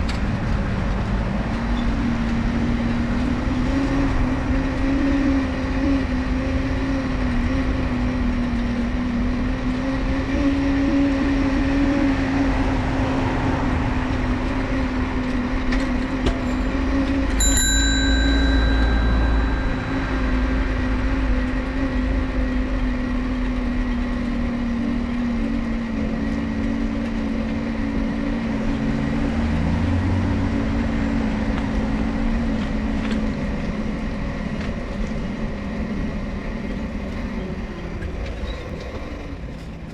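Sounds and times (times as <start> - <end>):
bicycle bell ringing: 16.4 - 21.8.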